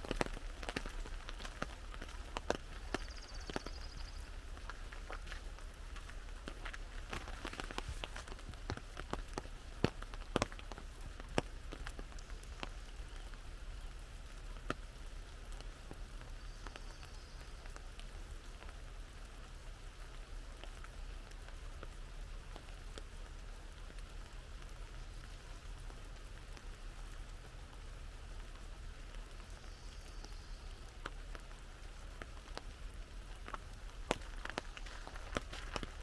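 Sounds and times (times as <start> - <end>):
rain falling on an umbrella: 0.0 - 36.0.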